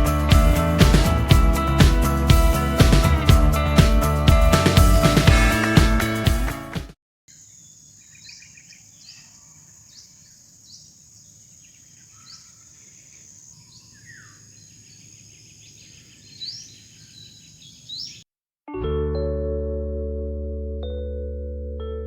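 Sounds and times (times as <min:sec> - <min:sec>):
insects buzzing: 0:07.3 - 0:18.2
birds chirping: 0:07.3 - 0:18.3.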